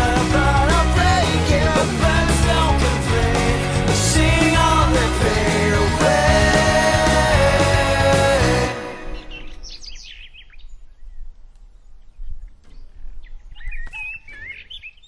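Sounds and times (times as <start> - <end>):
music: 0.0 - 9.7.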